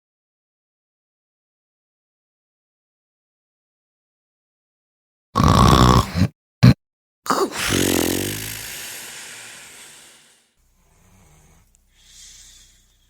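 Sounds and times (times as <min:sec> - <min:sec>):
person snoring: 0:05.4 - 0:12.8.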